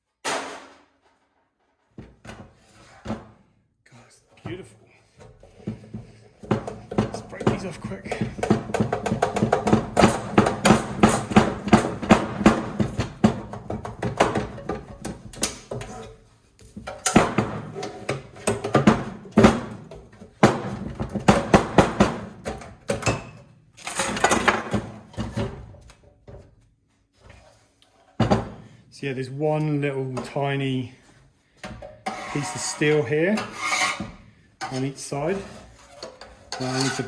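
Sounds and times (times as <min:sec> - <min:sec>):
metal knocks and clanks: 0:05.4 - 0:16.2.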